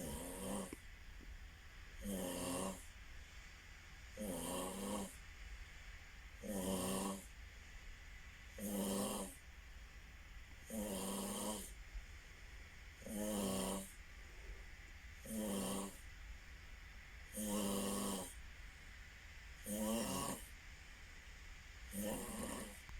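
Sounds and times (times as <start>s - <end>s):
person snoring: 0.0s - 0.8s, 2.0s - 2.9s, 4.2s - 5.2s, 6.4s - 7.3s, 8.6s - 9.4s, 10.6s - 11.8s, 13.0s - 14.0s, 15.2s - 16.0s, 17.3s - 18.4s, 19.6s - 20.5s, 21.9s - 22.8s.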